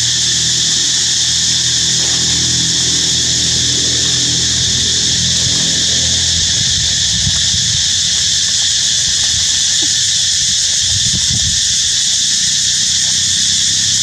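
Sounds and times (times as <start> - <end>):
low rumbling: 0.0 - 9.1
insects chorus: 0.0 - 14.0.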